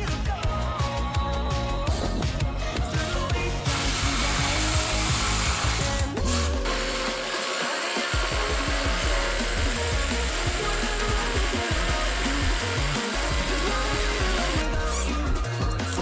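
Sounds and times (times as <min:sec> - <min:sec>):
background music with steady beat: 0:00.0 - 0:16.0
power tool whirring: 0:03.6 - 0:14.7.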